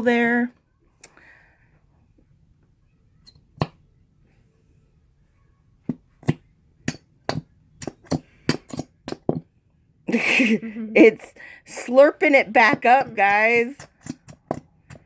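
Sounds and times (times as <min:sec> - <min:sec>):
glue container knocking: 0:05.9 - 0:09.5, 0:12.5 - 0:15.0.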